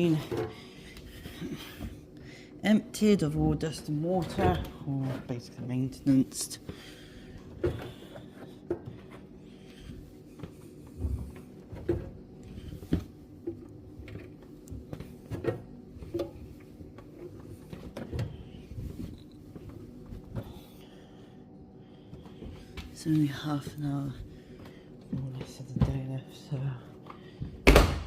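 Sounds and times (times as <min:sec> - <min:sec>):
faint steady hum: 0:00.0 - 0:28.0
laundry thudding into dryer drum: 0:27.6 - 0:28.0.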